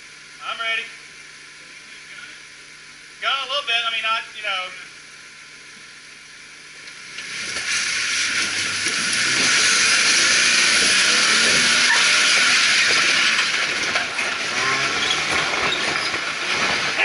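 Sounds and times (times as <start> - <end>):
engine running low: 0.0 - 17.0
tires spinning on rock: 6.9 - 17.0.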